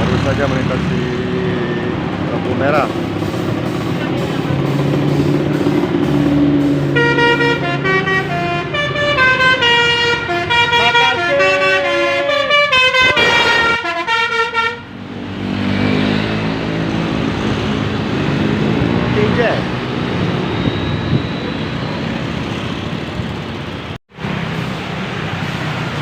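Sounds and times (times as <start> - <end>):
bus engine running: 0.0 - 15.4
bus horn playing a tune: 6.6 - 14.9.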